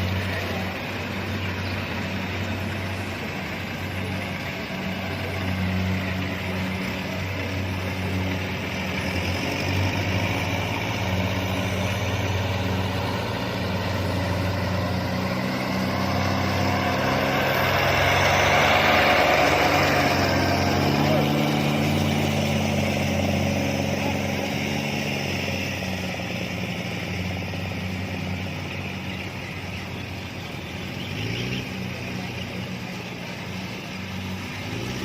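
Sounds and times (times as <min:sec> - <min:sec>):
combine harvester engine hum: 0:00.0 - 0:35.0.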